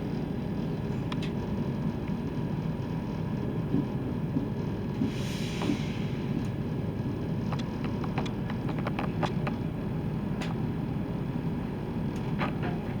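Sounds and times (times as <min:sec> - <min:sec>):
train rumbling: 0:00.0 - 0:13.0
sharp clicks and knocks: 0:07.5 - 0:09.6.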